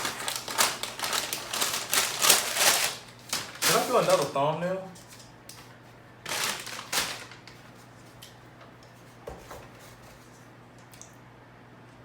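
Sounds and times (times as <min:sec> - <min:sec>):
handling rustling: 0:00.0 - 0:04.4, 0:05.0 - 0:08.1.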